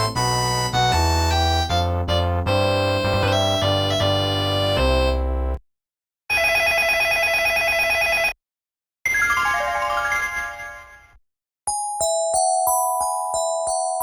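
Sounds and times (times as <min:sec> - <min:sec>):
electronic ringtone: 0:09.1 - 0:11.1.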